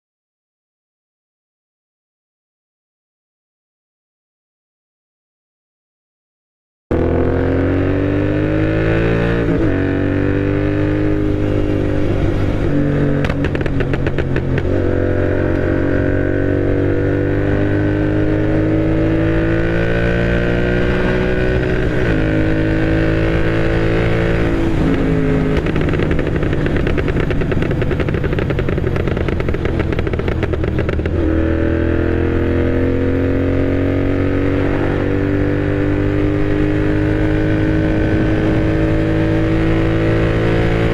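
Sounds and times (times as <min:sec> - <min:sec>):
motorcycle engine revving: 0:06.9 - 0:40.9
exhaust crackles: 0:11.3 - 0:17.8, 0:18.7 - 0:32.1.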